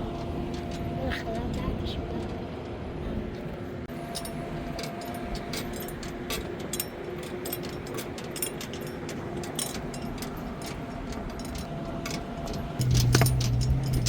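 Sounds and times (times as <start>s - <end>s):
engine running steadily: 0.0s - 14.0s
light clicks and rattles: 4.2s - 14.0s.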